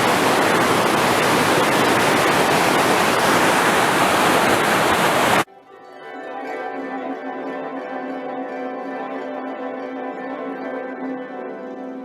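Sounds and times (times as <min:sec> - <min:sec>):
water rushing and tumbling: 0:00.0 - 0:05.5.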